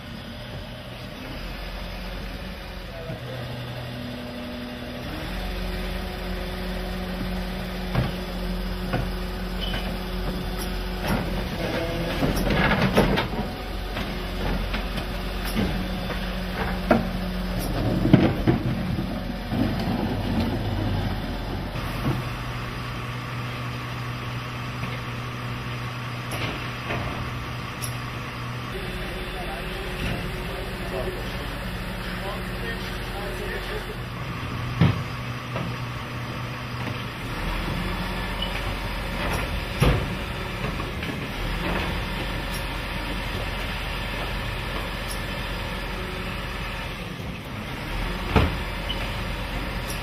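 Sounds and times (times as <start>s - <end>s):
garbage truck engine: 0.0s - 50.0s
bins clattering and knocking: 11.1s - 15.0s, 17.7s - 21.0s.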